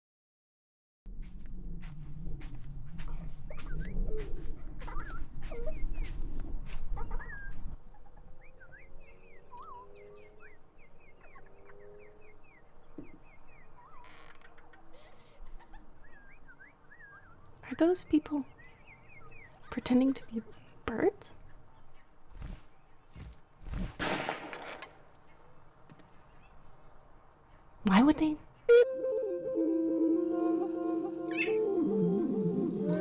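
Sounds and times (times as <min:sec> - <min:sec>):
bird-like chirps: 0:02.9 - 0:23.2.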